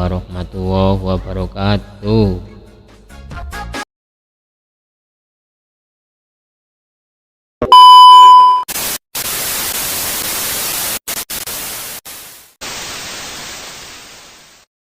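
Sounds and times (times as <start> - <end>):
steady beep tone: 7.6 - 8.7.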